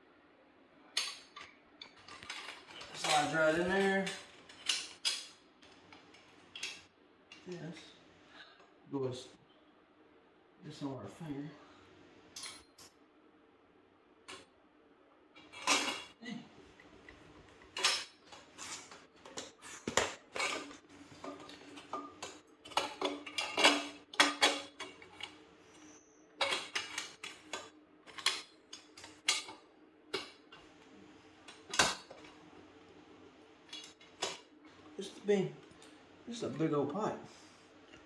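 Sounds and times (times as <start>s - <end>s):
faint steady hum: 0.0s - 38.0s
metal pipe clinking and clanking: 17.7s - 30.6s.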